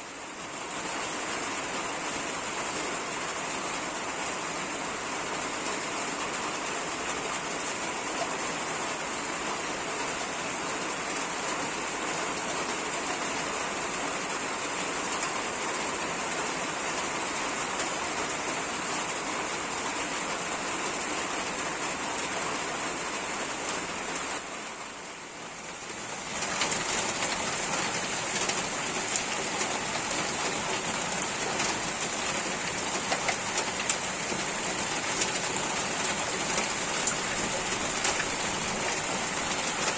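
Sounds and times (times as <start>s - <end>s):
heavy rain: 0.0s - 39.9s
raindrops ticking: 25.8s - 39.9s.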